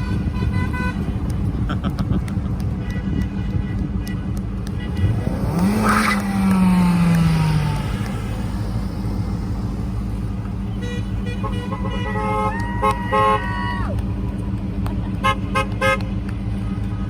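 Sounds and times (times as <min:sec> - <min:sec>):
traffic rumble: 0:00.0 - 0:17.0
vehicle passing by: 0:04.6 - 0:12.0.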